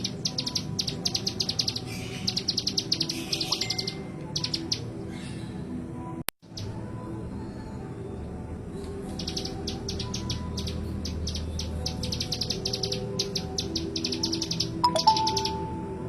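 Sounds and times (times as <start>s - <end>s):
bird singing sharp high notes: 0.0s - 4.8s, 9.2s - 16.0s.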